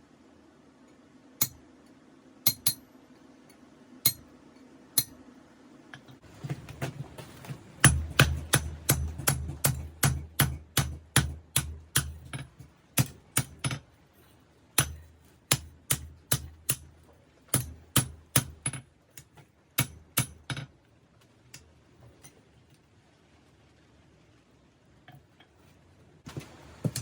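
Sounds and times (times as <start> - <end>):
hammer striking steel on anvil: 1.4 - 1.6, 2.4 - 2.9, 4.0 - 4.3, 5.0 - 5.2, 7.8 - 13.8, 14.8 - 16.9, 17.5 - 20.6.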